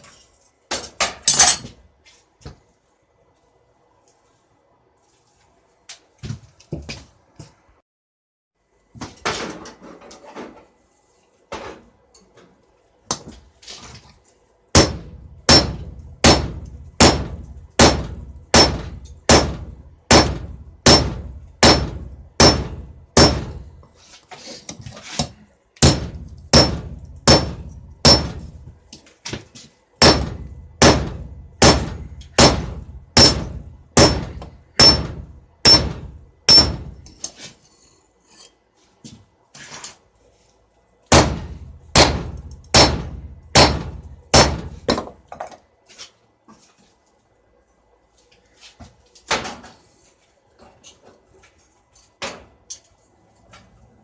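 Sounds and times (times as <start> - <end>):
hammer striking steel on anvil: 14.7 - 23.7, 25.8 - 28.6, 30.0 - 37.2, 41.1 - 45.0.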